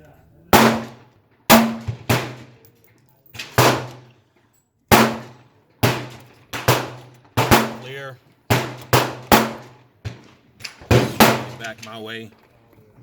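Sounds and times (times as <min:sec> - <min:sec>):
pistol shots: 0:00.5 - 0:02.6, 0:03.4 - 0:04.1, 0:04.9 - 0:12.0.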